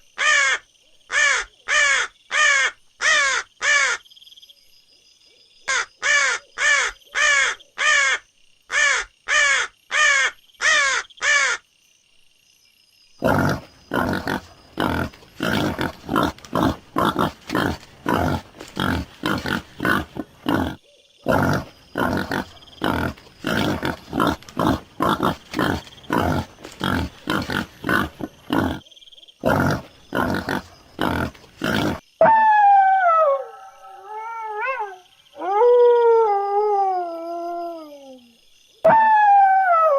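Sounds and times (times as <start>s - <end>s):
harsh caws: 0.2s - 4.0s, 5.7s - 11.6s
rapid grunts: 13.2s - 28.8s, 29.4s - 32.0s
dog howling: 32.3s - 38.3s.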